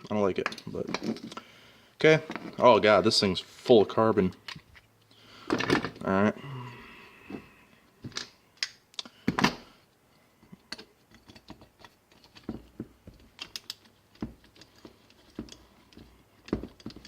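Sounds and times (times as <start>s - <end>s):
tools and metal parts clicking: 10.6s - 17.0s.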